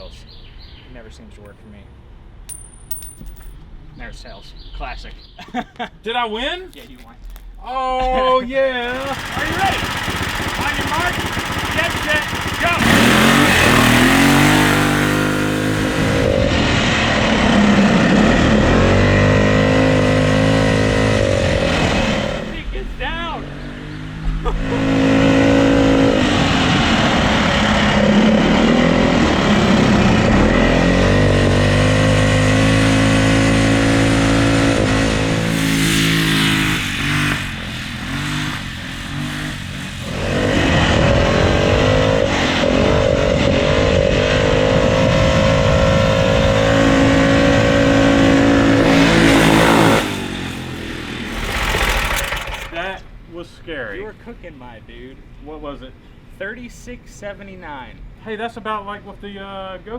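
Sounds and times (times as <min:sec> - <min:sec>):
engine revving at high revs: 0:08.8 - 0:22.7, 0:23.3 - 0:52.8.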